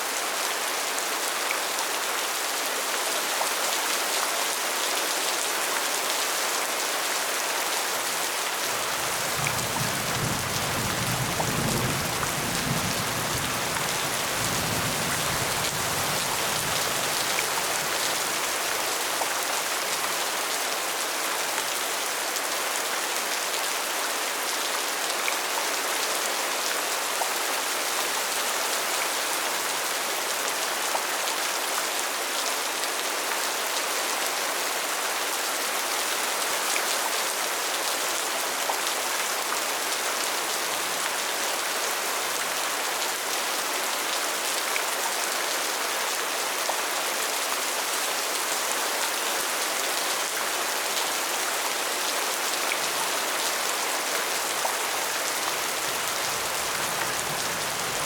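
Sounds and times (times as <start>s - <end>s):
steady rain hiss: 6.1s - 21.5s, 47.0s - 58.0s.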